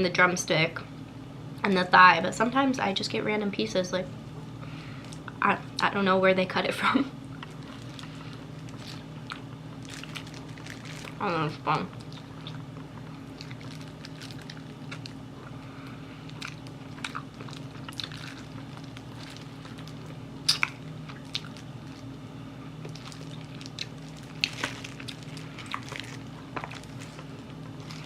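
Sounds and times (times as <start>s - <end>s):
low steady hum: 0.0s - 28.0s
chewing crispy food: 7.3s - 11.3s, 11.9s - 28.0s
crunches of fried coating: 7.4s - 11.3s, 22.8s - 28.0s.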